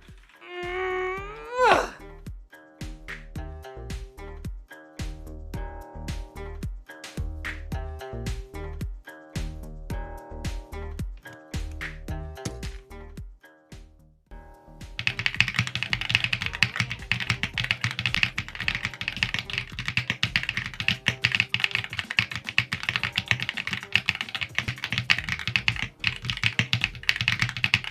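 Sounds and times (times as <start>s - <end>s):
mechanical keyboard typing: 15.0s - 27.9s.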